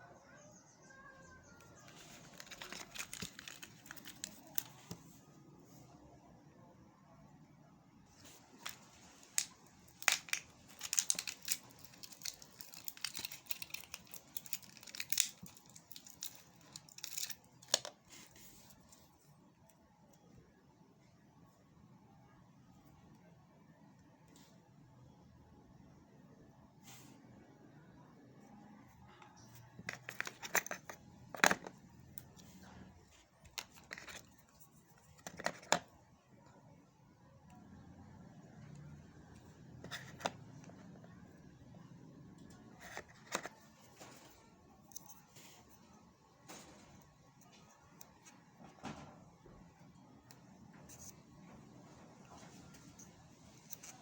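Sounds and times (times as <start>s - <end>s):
packaging clicks and rustles: 1.7s - 5.1s, 8.4s - 18.0s, 29.6s - 32.4s, 33.5s - 35.9s, 42.8s - 45.2s.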